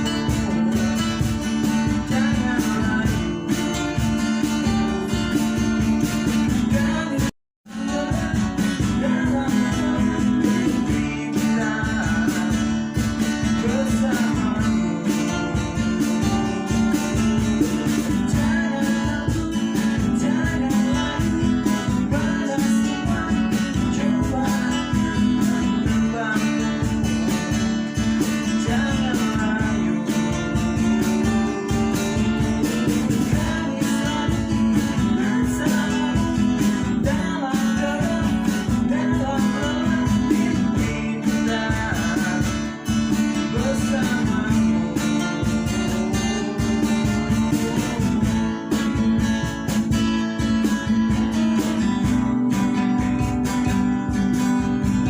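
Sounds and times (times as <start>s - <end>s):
acoustic guitars strumming: 0.0s - 55.0s
cajon beat: 0.0s - 55.0s.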